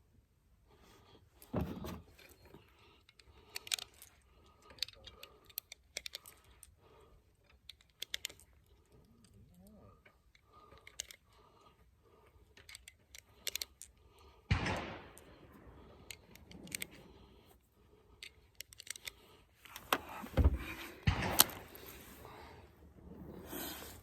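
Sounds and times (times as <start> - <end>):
clicks and rattles of hard objects: 1.4 - 6.8, 7.4 - 9.4, 10.0 - 11.4, 12.5 - 17.1, 18.2 - 22.4.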